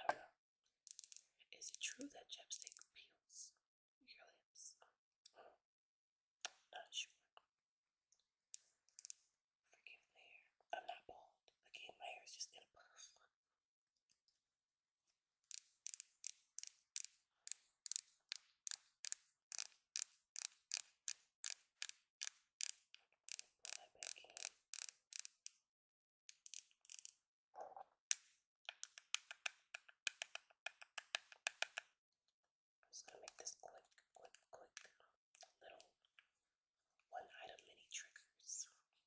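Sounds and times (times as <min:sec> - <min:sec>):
plastic tube clicking: 0:00.9 - 0:01.3, 0:09.0 - 0:09.2, 0:15.5 - 0:25.6, 0:26.3 - 0:27.2, 0:28.1 - 0:31.9.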